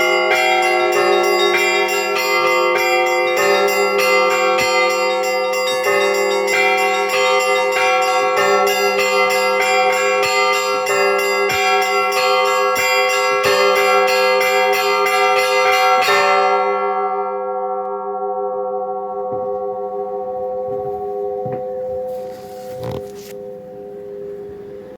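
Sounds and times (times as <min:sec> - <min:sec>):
small bells struck rapidly: 0:00.0 - 0:16.2
large bells humming: 0:00.0 - 0:24.9.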